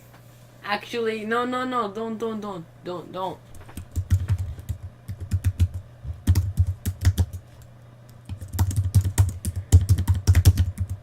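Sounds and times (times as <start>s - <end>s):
typing on computer keyboard: 3.8s - 7.4s, 8.3s - 11.0s.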